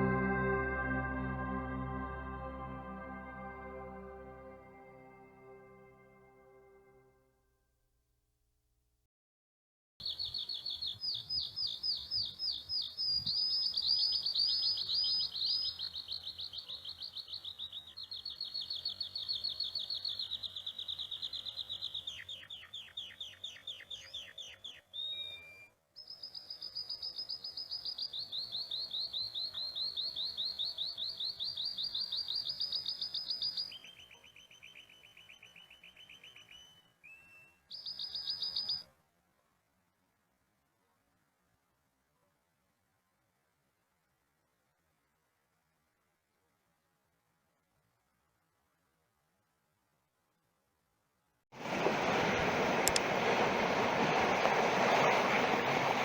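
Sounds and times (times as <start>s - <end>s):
bird chirping: 10.0s - 38.9s.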